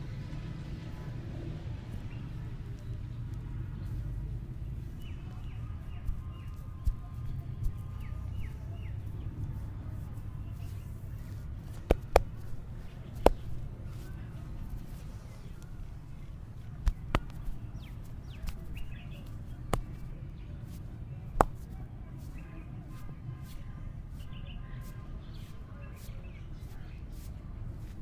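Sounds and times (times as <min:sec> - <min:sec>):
low outdoor rumble: 0:00.0 - 0:28.0
small birds chirping: 0:00.8 - 0:28.0
sharp smacks: 0:11.6 - 0:13.7, 0:16.8 - 0:17.6, 0:18.3 - 0:20.1, 0:21.3 - 0:21.8.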